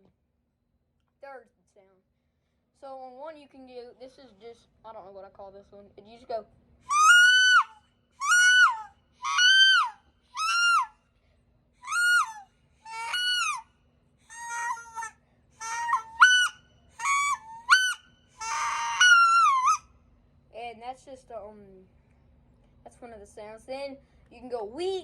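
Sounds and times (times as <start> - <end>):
duck call whistled notes: 14.4 - 19.8.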